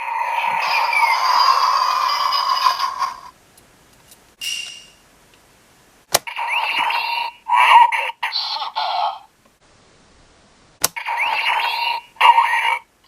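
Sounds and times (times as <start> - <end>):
electronic toy sound effects: 0.0 - 3.3, 6.2 - 9.3, 11.0 - 12.9
sharp click: 4.4 - 5.0.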